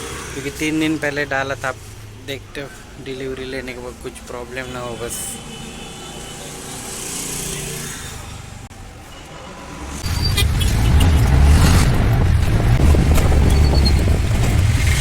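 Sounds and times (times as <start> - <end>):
vehicle rumbling past: 9.5 - 15.0.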